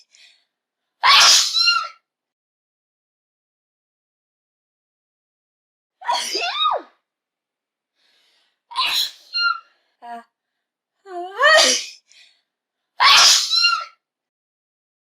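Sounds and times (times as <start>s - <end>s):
person sneezing: 11.5s - 12.0s.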